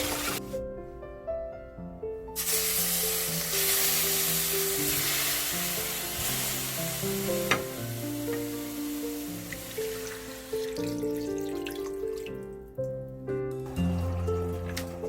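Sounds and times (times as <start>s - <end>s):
food sizzling in a pot: 0.0s - 0.5s, 2.4s - 10.8s
slow melodic background music: 0.0s - 15.0s.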